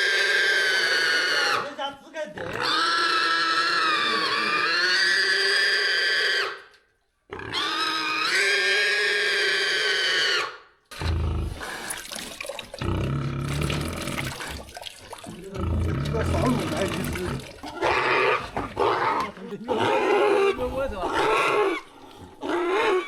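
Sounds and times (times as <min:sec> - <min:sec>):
pig squealing: 0:00.0 - 0:01.8, 0:02.4 - 0:12.1, 0:15.3 - 0:23.0.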